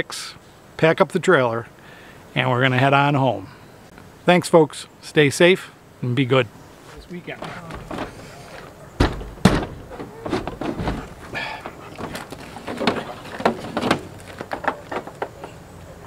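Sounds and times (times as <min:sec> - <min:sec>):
knocks and thumps: 0:07.3 - 0:15.6.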